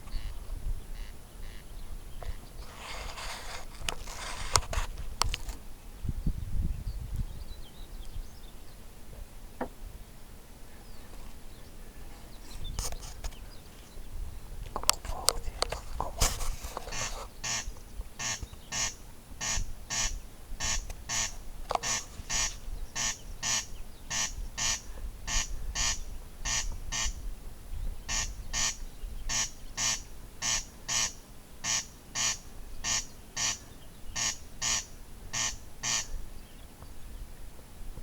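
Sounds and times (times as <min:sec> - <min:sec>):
corncrake rasping call: 0:00.0 - 0:05.5, 0:14.8 - 0:27.2, 0:28.0 - 0:36.2.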